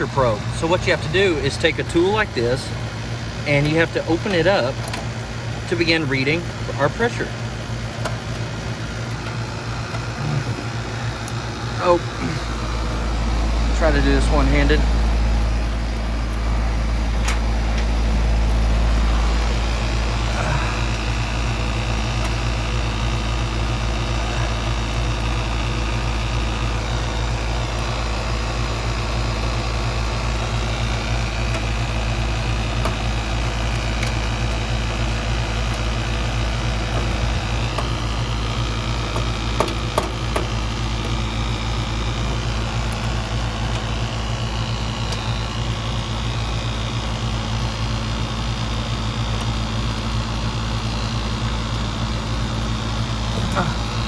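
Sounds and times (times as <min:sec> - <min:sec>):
low machine hum: 0:00.0 - 0:54.0
sharp metallic clicks: 0:30.7 - 0:46.8.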